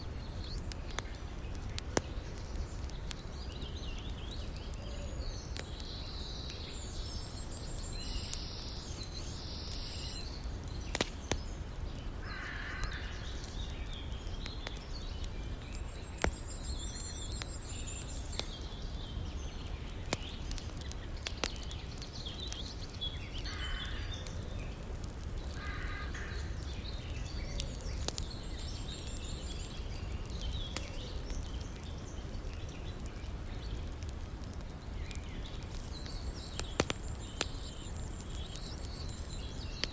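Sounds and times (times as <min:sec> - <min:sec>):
wood fire crackling and popping: 0:00.0 - 0:39.9
birds calling: 0:22.3 - 0:24.5.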